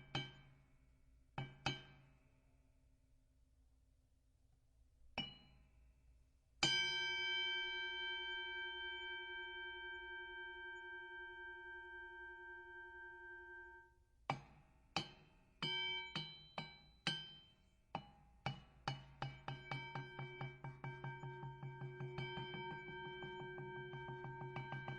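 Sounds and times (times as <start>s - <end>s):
boxing ring bell: 15.6s - 17.3s.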